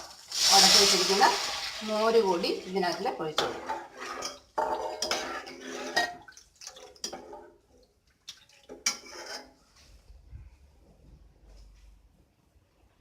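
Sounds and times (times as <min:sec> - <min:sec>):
spoon scraping a pan: 0:02.8 - 0:06.2, 0:08.7 - 0:09.8.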